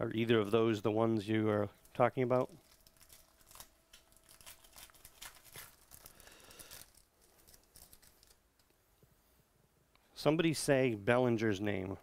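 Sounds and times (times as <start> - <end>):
card wrappers crinkling: 1.8 - 8.6.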